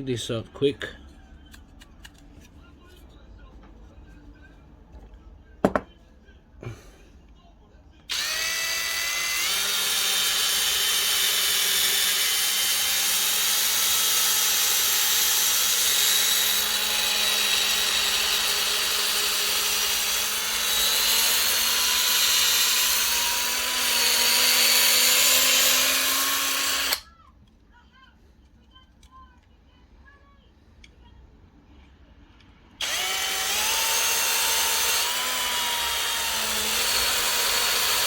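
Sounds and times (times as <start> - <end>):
electric drill drilling metal: 8.1 - 27.0, 32.8 - 38.0.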